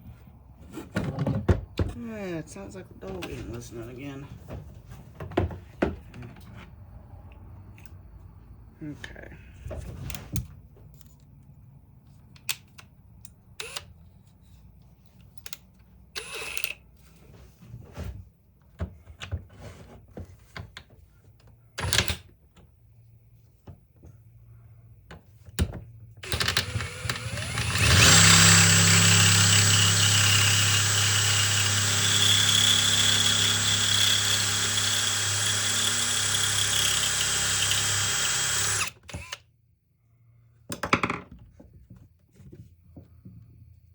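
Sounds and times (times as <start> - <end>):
power drill whining: 13.6 - 13.8, 16.2 - 16.8, 26.2 - 39.4.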